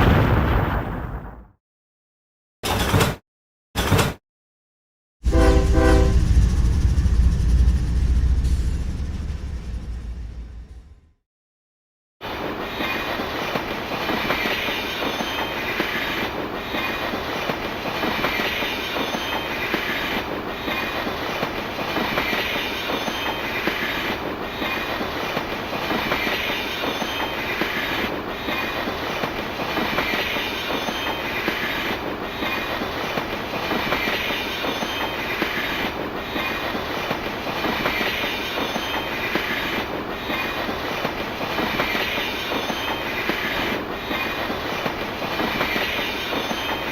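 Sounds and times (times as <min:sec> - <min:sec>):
train wheels clattering on rails: 0:12.8 - 0:46.9.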